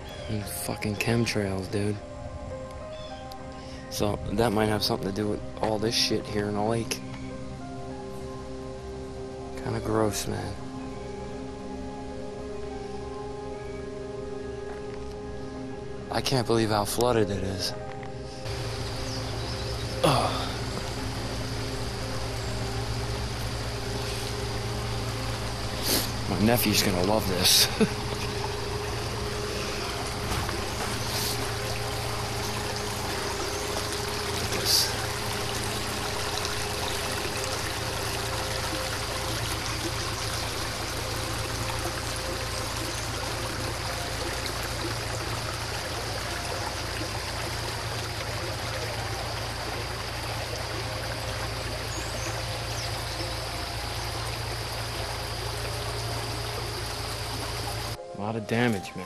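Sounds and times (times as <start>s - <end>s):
flowing water rushing: 18.4s - 58.0s.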